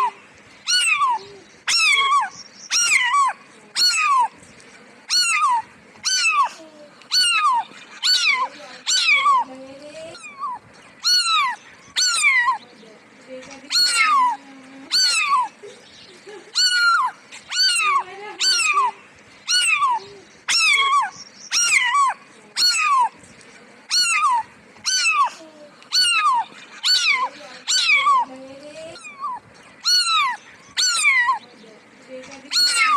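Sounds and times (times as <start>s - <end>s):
cat meowing: 0.7s - 4.4s, 5.1s - 9.5s, 10.2s - 12.6s, 13.7s - 15.5s, 16.6s - 23.2s, 23.9s - 28.3s, 29.0s - 31.4s, 32.5s - 32.9s.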